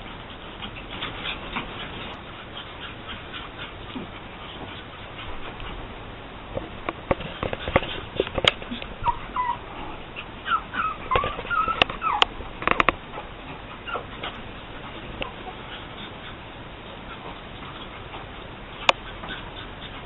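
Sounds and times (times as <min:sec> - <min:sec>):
puppy whimpering: 0:07.9 - 0:14.4.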